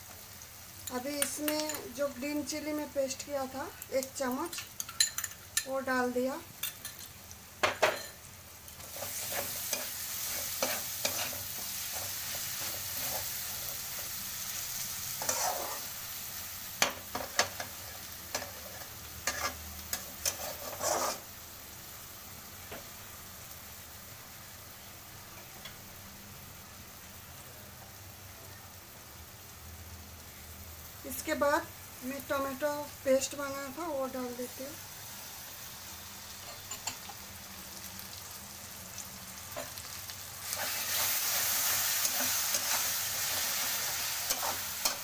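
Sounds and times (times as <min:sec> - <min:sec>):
paste sizzling in oil: 0:00.0 - 0:25.2, 0:29.4 - 0:45.0
spoon scraping and knocking pan: 0:08.8 - 0:14.2, 0:15.2 - 0:15.9, 0:16.8 - 0:21.3, 0:40.5 - 0:45.0.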